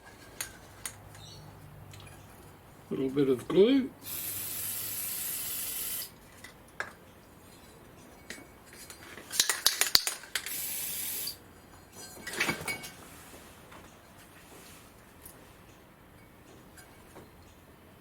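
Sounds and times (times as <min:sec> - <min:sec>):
aerosol spray hissing: 0:04.0 - 0:06.2, 0:10.5 - 0:11.4.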